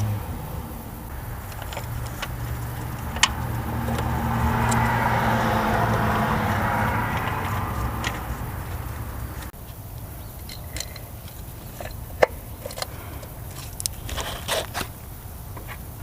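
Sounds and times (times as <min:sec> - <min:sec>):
rushing passing traffic: 0:00.0 - 0:10.0
motor vehicle humming: 0:00.0 - 0:13.7
sharp metallic clicks: 0:01.0 - 0:09.5.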